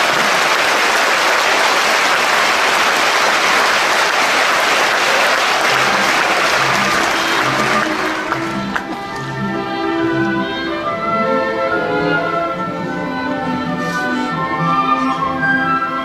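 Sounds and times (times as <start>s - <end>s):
audience applauding: 0.0s - 9.5s
low orchestral notes: 5.4s - 16.0s.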